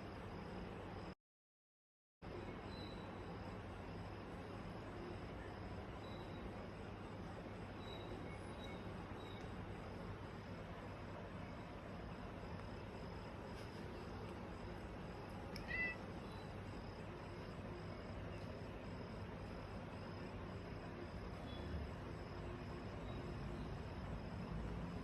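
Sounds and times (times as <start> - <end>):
insect chirping: 2.3 - 25.0.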